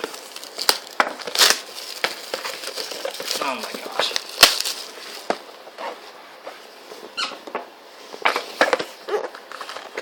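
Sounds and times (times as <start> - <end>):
cardboard and wrapper squeaking: 0.0 - 6.0, 7.1 - 7.4, 8.2 - 10.0.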